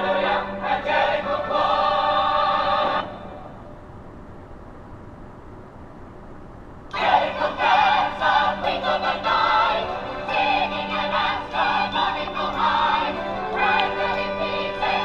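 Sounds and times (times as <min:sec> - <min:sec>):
choir singing: 0:00.0 - 0:03.5, 0:06.9 - 0:15.0.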